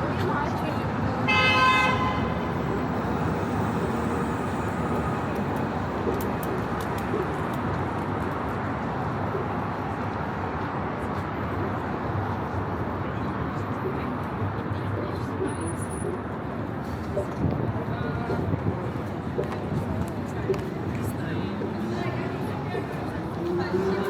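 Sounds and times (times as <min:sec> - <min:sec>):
road traffic noise: 0:00.0 - 0:24.0
car horn: 0:01.3 - 0:02.4.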